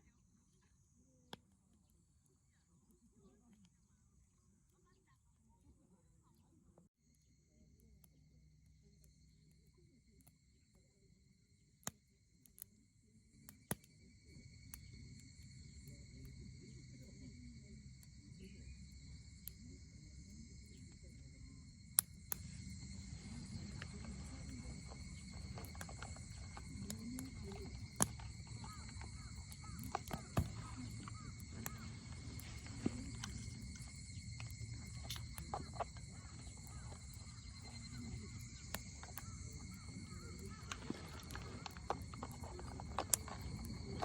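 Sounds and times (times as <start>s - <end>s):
crickets chirping: 0.0s - 44.0s
bonfire crackling and popping: 13.4s - 44.0s
distant voices murmuring: 15.7s - 44.0s.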